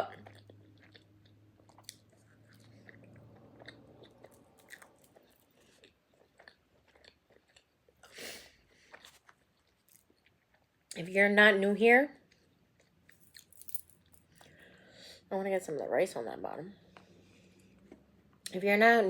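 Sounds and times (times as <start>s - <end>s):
person chewing: 0.0s - 10.9s.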